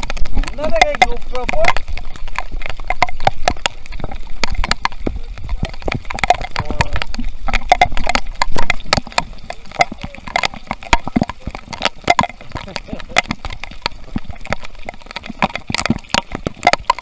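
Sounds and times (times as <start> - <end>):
heavy rain drops tapping: 0.0 - 17.0.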